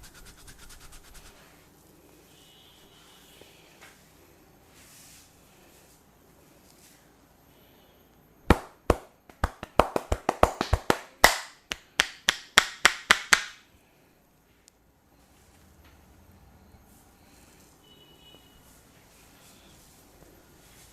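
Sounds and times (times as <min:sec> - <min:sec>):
hands slapping during massage: 0:08.5 - 0:13.6.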